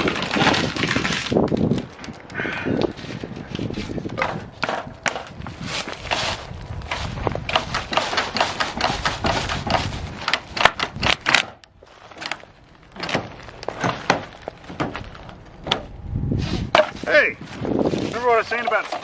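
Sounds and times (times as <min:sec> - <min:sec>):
clattering knocks and rattles: 0:03.8 - 0:05.4, 0:06.9 - 0:15.9, 0:18.4 - 0:19.0.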